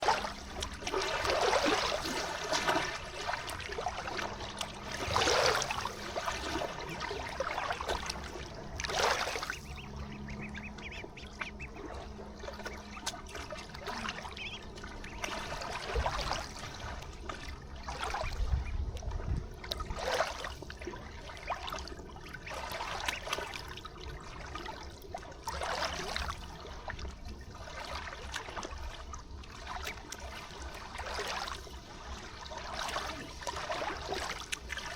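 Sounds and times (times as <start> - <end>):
river water trickling: 0.0 - 34.9
ducks quacking: 4.9 - 16.4.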